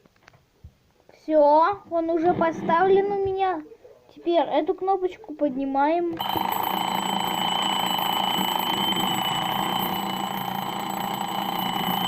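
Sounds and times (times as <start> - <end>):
alarm clock ringing: 6.2 - 12.0.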